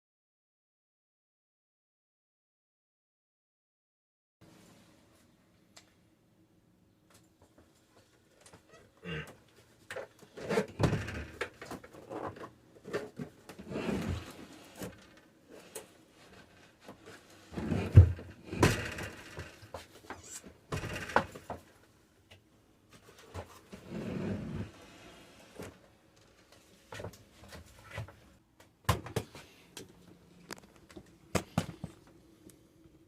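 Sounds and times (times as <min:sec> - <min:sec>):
refrigerator knocking and scraping: 0:10.4 - 0:12.4, 0:17.5 - 0:20.0, 0:20.7 - 0:21.6.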